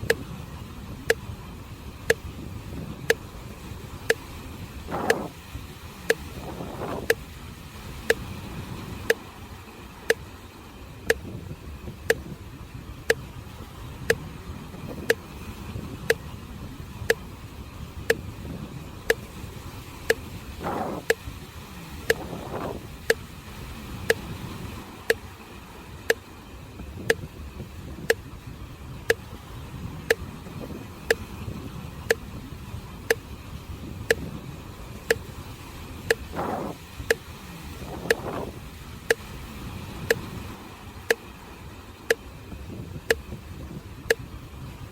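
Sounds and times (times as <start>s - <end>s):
sea waves on the shore: 0.0s - 44.9s
metronome ticking: 4.9s - 5.3s, 6.1s - 6.4s, 7.0s - 7.2s, 11.1s - 11.3s, 12.0s - 12.4s, 15.0s - 15.2s, 20.0s - 21.2s.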